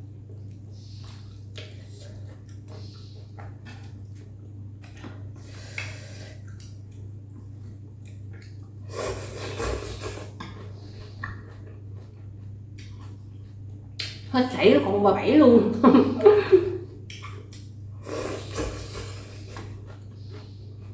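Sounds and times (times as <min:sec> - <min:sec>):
steady low hum: 0:00.0 - 0:20.9
chewing: 0:00.3 - 0:08.8, 0:09.6 - 0:14.2, 0:17.0 - 0:17.7, 0:18.4 - 0:20.9.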